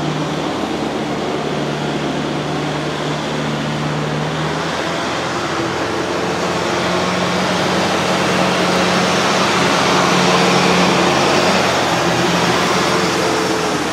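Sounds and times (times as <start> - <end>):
diesel tractor engine running: 0.0 - 13.9.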